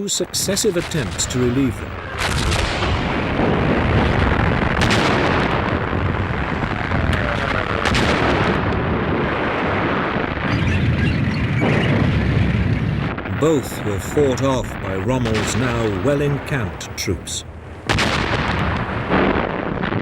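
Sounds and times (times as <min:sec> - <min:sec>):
artillery explosions: 0:00.3 - 0:20.0
sharp cracks: 0:00.8 - 0:10.6, 0:12.7 - 0:20.0
gunfire: 0:00.8 - 0:10.8, 0:13.3 - 0:20.0.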